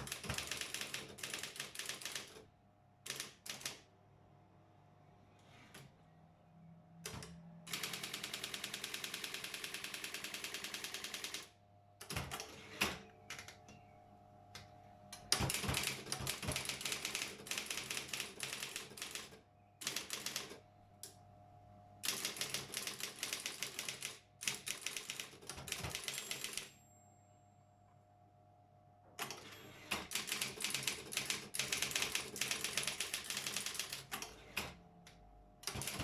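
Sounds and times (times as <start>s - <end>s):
electric typewriter keystrokes: 0.0s - 2.4s, 3.0s - 3.9s, 7.0s - 13.7s, 15.2s - 20.6s, 22.0s - 26.7s, 29.2s - 36.0s
typewriter motor humming: 0.0s - 2.4s, 7.0s - 13.4s, 15.2s - 20.6s, 22.0s - 26.7s, 29.2s - 34.8s, 35.6s - 36.0s.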